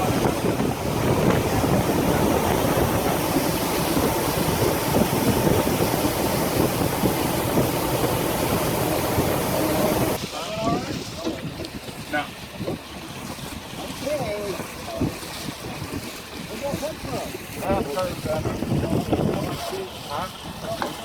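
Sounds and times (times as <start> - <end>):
vehicle engine running: 0.0 - 10.2
rushing churning water: 0.0 - 21.0.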